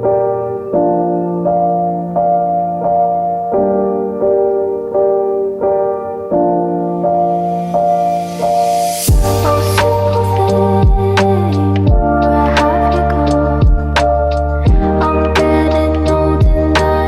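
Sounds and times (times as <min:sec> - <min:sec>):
soft piano chords: 0:00.0 - 0:17.0.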